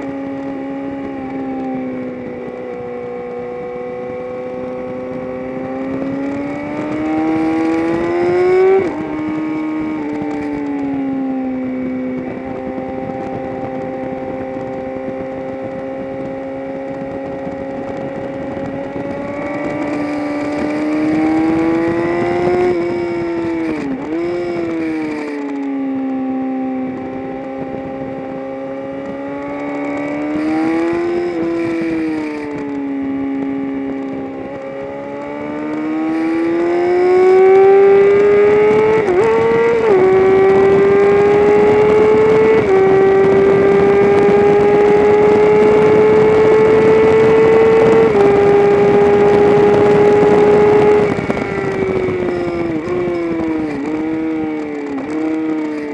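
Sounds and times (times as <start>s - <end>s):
race car engine running hard: 34.0s - 55.9s.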